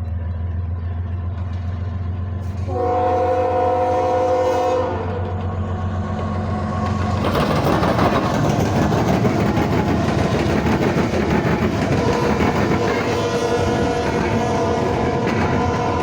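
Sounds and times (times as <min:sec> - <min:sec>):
low diesel hum: 0:00.0 - 0:07.7
freight train rumbling by: 0:00.0 - 0:16.0.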